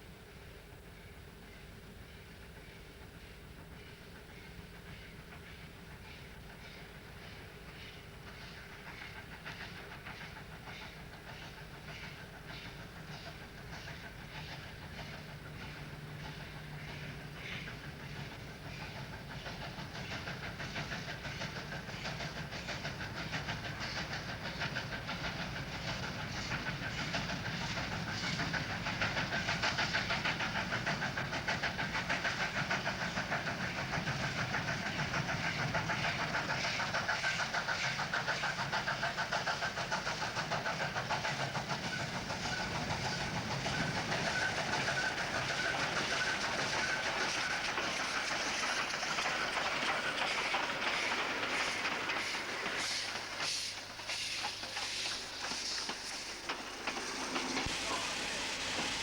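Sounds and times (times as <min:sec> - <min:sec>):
steam locomotive running: 0:00.0 - 0:59.0.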